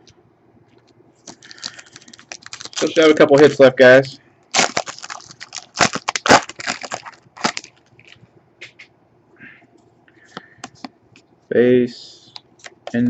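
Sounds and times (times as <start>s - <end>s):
wrapper crinkling as torn open: 1.2s - 3.6s, 4.5s - 8.2s.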